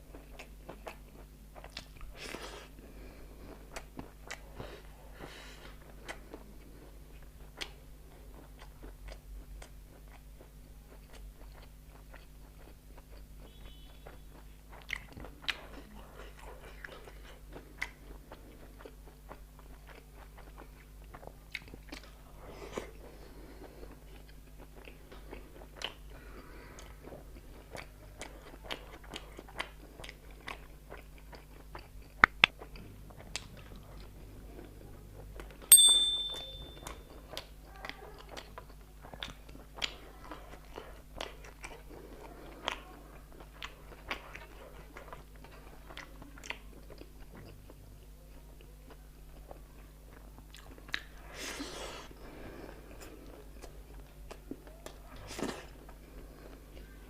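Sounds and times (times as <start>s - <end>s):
chewing and biting: 0.1s - 2.7s, 3.4s - 4.9s, 5.6s - 34.8s, 36.8s - 52.0s
sharp ringing clink: 35.7s - 37.0s.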